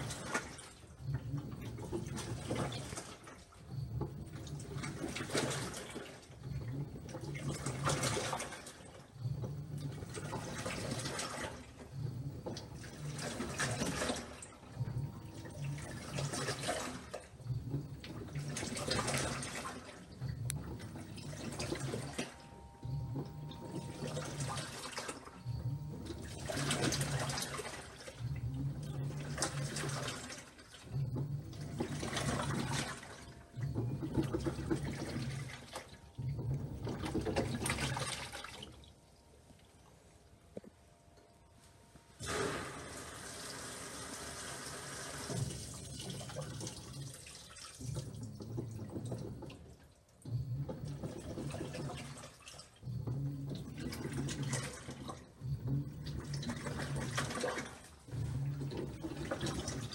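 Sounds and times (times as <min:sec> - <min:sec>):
washing machine motor agitating: 0:00.0 - 0:38.9, 0:42.2 - 0:59.9
water swishing and sloshing: 0:00.0 - 0:59.9.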